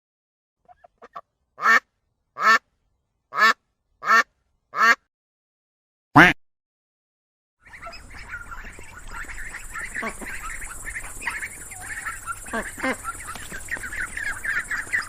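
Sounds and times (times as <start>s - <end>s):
duck quacking: 0.7s - 1.8s, 2.4s - 2.6s, 3.3s - 5.1s, 6.2s - 6.4s, 7.6s - 15.0s.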